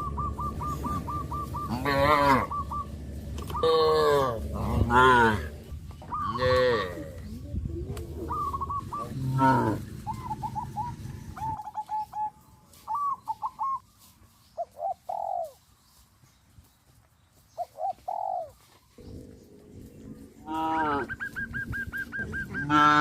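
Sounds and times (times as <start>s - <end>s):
low rumble: 0.0s - 11.6s, 19.0s - 23.0s
dove cooing: 0.0s - 13.9s, 14.6s - 15.6s, 17.6s - 23.0s.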